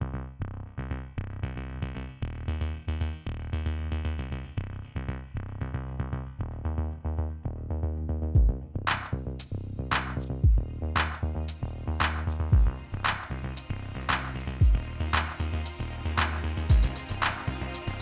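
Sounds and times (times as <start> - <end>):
electronic music with drum-machine beat: 10.1 - 18.0.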